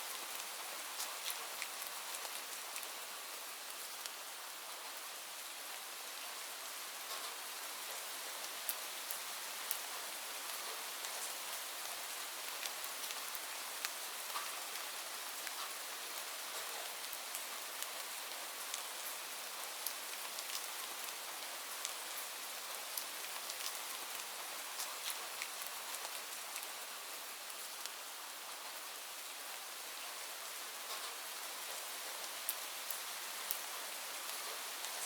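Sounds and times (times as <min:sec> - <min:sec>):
steady rain hiss: 0:00.0 - 0:35.0
raindrops tapping on a surface: 0:30.8 - 0:31.2.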